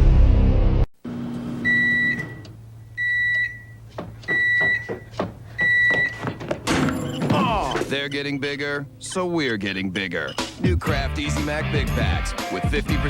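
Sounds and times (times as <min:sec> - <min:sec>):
microwave oven beeping: 0:01.1 - 0:06.3.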